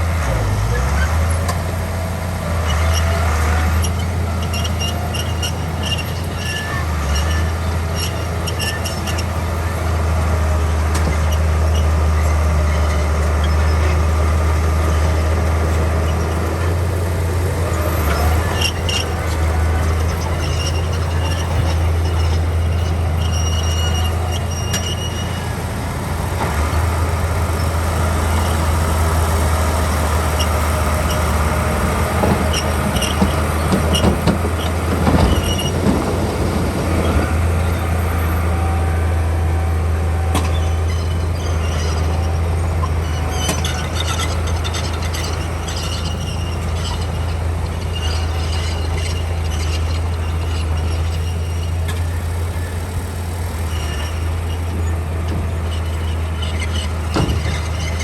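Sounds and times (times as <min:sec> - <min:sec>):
diesel machinery engine drone: 0:00.0 - 0:58.0
high squeals: 0:02.2 - 0:58.0
metallic clanks: 0:10.7 - 0:38.2, 0:40.2 - 0:58.0.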